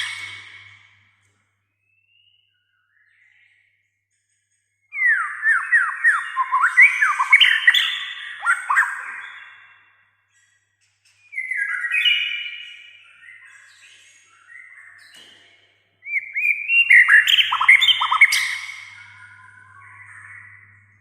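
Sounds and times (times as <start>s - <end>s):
bird singing whistled phrases: 0.0s - 1.0s, 4.9s - 9.9s, 11.3s - 15.2s, 16.0s - 21.0s.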